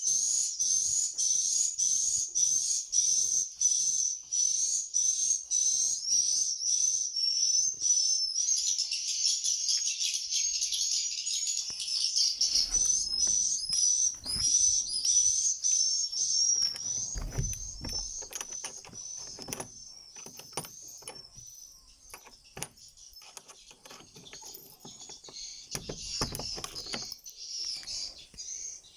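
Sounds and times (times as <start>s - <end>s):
sharp clicks: 16.6s - 21.5s.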